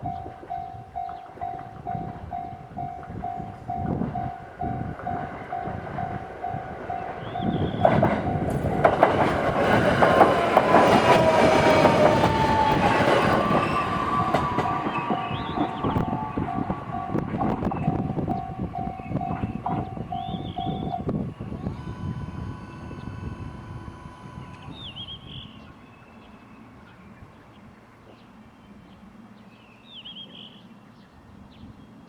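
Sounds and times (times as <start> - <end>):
train wheels clacking: 0.4 - 21.0.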